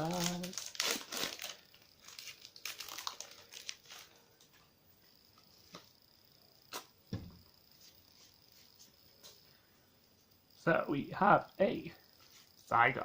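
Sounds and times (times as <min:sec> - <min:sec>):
foil wrapper crinkling and tearing: 0:00.0 - 0:04.5
dull thump: 0:07.1 - 0:07.5.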